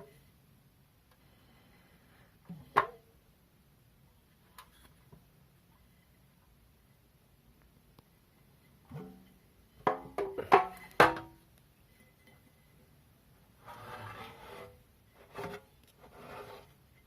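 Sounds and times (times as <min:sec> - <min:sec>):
rubbing or scraping: 0:13.6 - 0:17.0.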